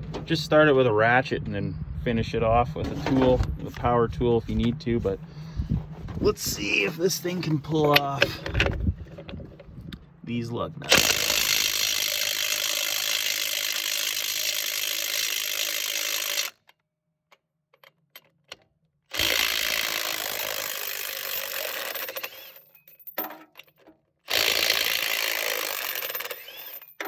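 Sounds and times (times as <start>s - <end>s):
impact wrench hammering: 10.9s - 16.5s, 19.2s - 22.6s, 24.3s - 27.0s.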